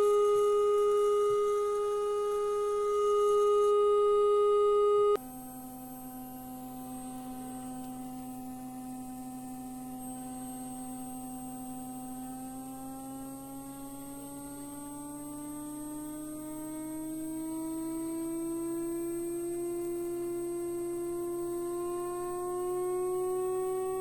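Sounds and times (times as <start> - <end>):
electronic test tone: 0.0 - 5.2.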